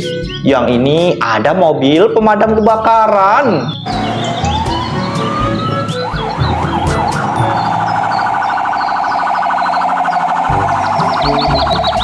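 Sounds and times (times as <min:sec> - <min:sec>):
fire engine siren: 0:03.9 - 0:12.0.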